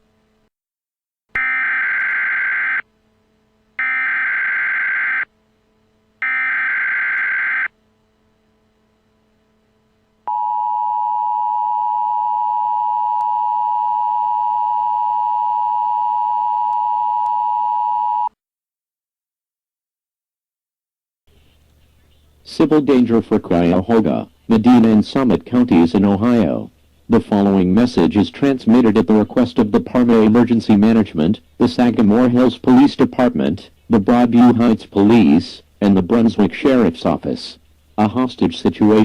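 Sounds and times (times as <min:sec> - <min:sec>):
screechy data tone bursts: 0:01.4 - 0:02.8, 0:03.8 - 0:05.3, 0:06.2 - 0:07.7.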